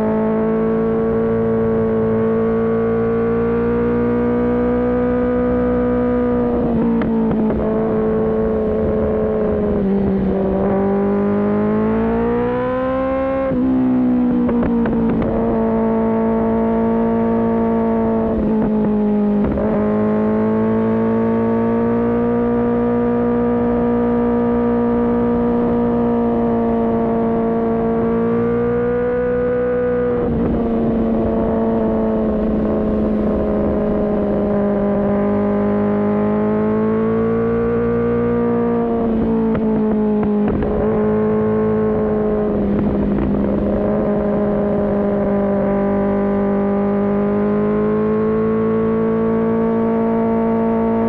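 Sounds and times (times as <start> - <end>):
motorcycle engine running hard: 13.0 - 51.0.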